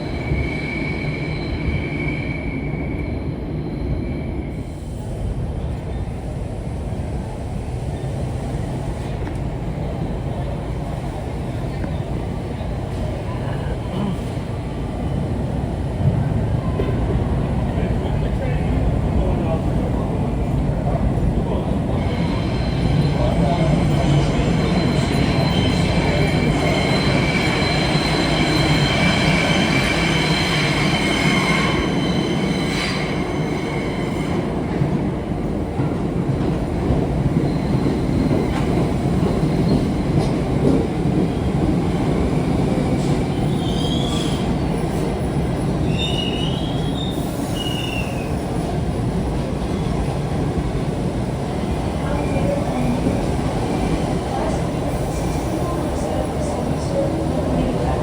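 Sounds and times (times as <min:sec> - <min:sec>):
steel wheels squealing: 0:00.0 - 0:03.2, 0:22.0 - 0:34.4, 0:43.3 - 0:45.2, 0:45.8 - 0:48.4
subway train rumble: 0:00.0 - 0:58.0.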